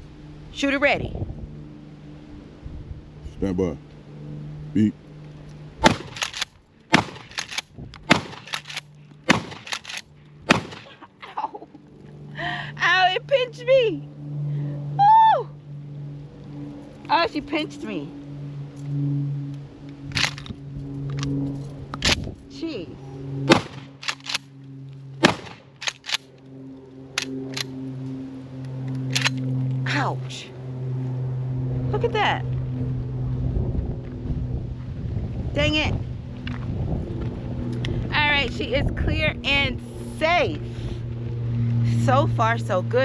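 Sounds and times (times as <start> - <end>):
steady low hum: 0.0 - 43.0
faint gunshots: 5.8 - 9.9, 10.5 - 10.9, 23.5 - 24.0, 25.2 - 25.6
shotgun pump racking clacks: 5.8 - 10.1, 24.0 - 24.4, 25.8 - 26.2
shotgun shots: 5.8 - 11.0, 23.5 - 24.4, 25.2 - 26.2.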